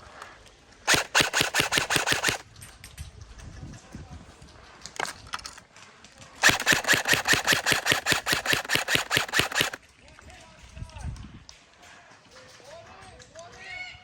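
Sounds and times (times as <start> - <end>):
airsoft gun full-auto burst: 0.9 - 2.4, 6.4 - 9.8
sharp clicks: 0.9 - 2.8, 6.4 - 9.8.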